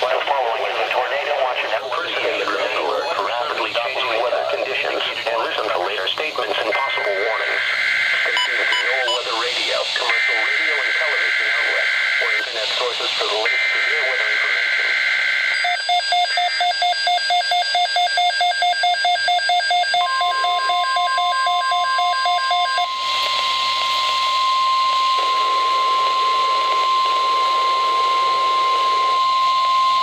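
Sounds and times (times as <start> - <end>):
radio hiss: 0.0 - 15.6, 22.9 - 30.0
digital header burst: 6.6 - 16.5
steady warning alarm tone: 6.6 - 30.0
rapid alert beeps: 8.2 - 9.3, 13.5 - 23.0.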